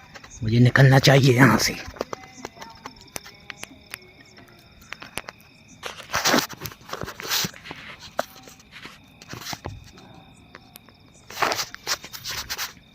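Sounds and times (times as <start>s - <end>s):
crickets chirping: 0.0s - 12.9s
footsteps crunching on dry ground: 5.8s - 9.6s, 11.3s - 12.8s.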